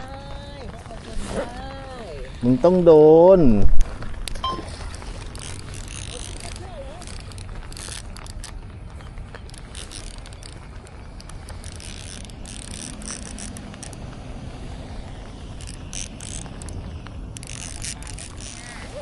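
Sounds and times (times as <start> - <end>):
wind rumbling on microphone: 0.0 - 19.0
fishing reel clicking whir: 4.7 - 8.6, 9.3 - 19.0.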